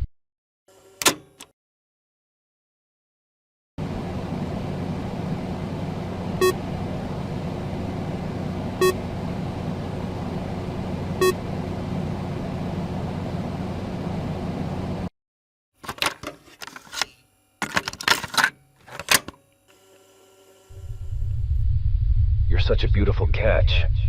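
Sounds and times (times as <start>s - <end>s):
electrical hum and hiss: 3.8s - 15.1s
buzzy electronic beep: 8.8s - 9.0s.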